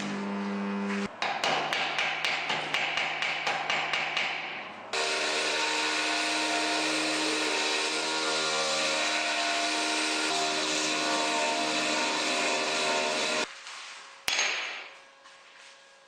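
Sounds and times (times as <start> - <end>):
sharp metallic knocks: 1.2 - 4.7.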